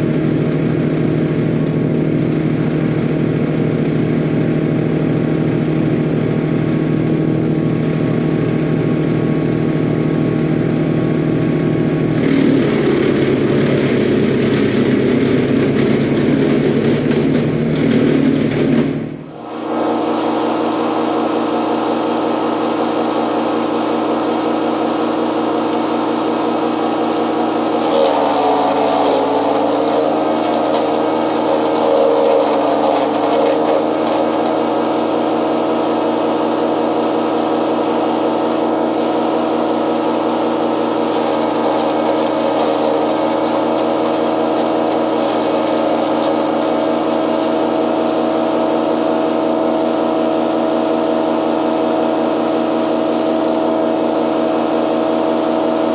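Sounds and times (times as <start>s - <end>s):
motor humming: 25.6s - 35.2s, 41.0s - 48.8s.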